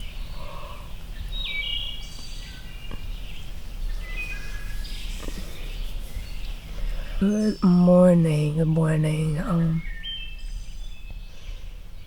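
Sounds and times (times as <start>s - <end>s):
low background rumble: 0.0s - 12.0s
birds singing whistled phrases: 1.2s - 7.7s, 9.7s - 12.0s.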